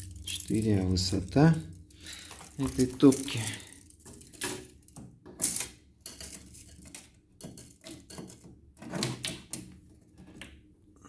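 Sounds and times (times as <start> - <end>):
tape measure clicking and rattling: 0.0 - 8.4.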